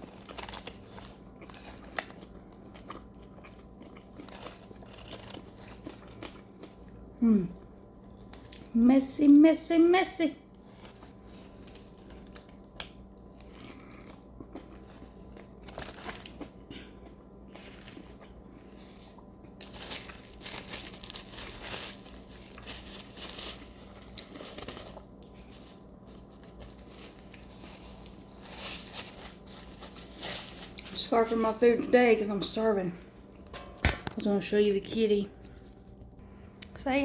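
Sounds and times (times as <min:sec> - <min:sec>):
paper wrapper crinkling: 0:00.0 - 0:02.9, 0:03.5 - 0:06.4, 0:14.6 - 0:16.6, 0:17.5 - 0:32.3
person chewing: 0:00.0 - 0:08.7, 0:10.6 - 0:20.2.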